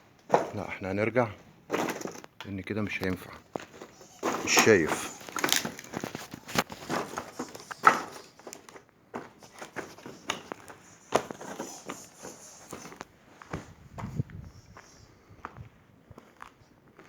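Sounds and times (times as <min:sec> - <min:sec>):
footsteps crunching on sand and stones: 0:02.8 - 0:17.0
scrapes and clicks: 0:03.5 - 0:08.8.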